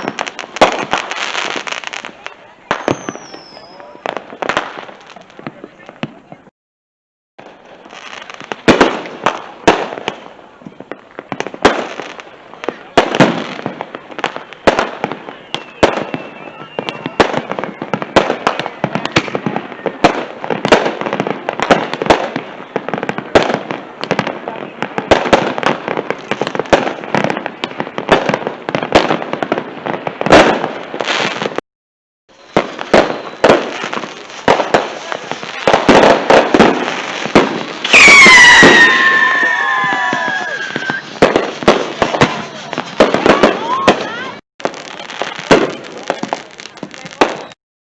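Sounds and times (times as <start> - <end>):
whistling firework screaming: 0.0 - 4.2, 14.2 - 20.3, 32.3 - 46.1, 47.2 - 47.6
fireworks crackling pops and bangs: 0.0 - 6.5, 7.4 - 31.6, 32.3 - 47.6.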